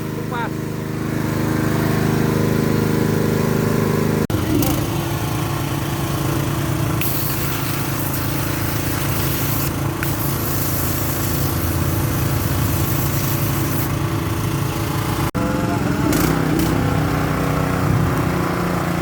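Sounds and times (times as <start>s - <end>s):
petrol engine running: 0.0s - 19.0s
high-pressure water jet hiss: 7.0s - 14.1s.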